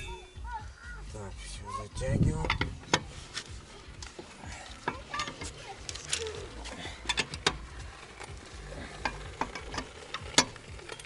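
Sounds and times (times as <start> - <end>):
metallic clicks of hand wrench: 2.4 - 3.1, 7.0 - 8.3.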